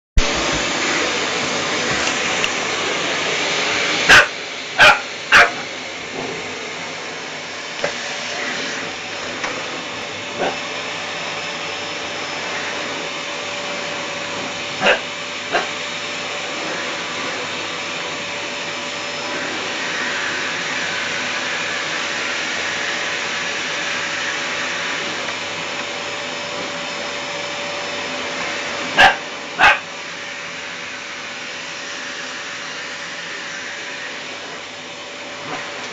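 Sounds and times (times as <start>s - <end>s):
vacuum cleaner running: 0.2s - 35.9s
puppy barking: 4.1s - 5.6s, 10.4s - 10.6s, 14.8s - 15.7s, 29.0s - 29.9s.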